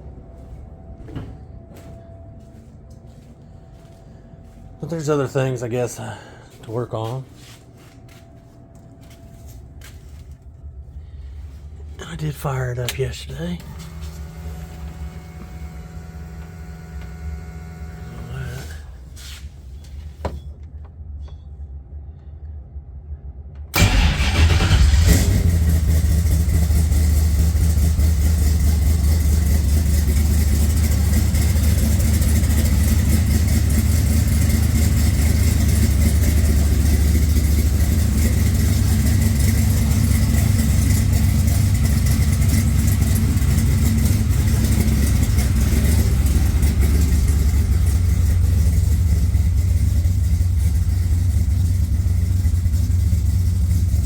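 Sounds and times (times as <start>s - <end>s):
car engine idling: 9.0s - 20.2s, 23.8s - 54.0s.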